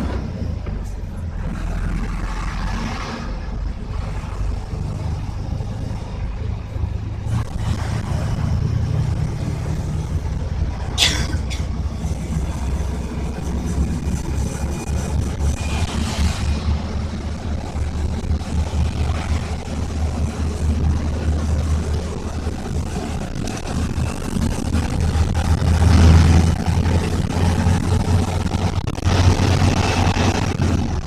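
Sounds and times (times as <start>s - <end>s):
low engine rumble: 0.0s - 31.0s.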